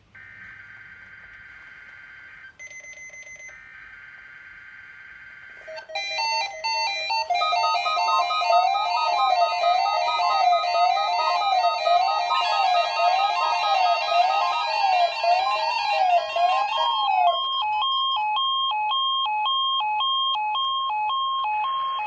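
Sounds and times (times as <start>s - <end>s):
electronic keyboard music: 5.7s - 18.2s.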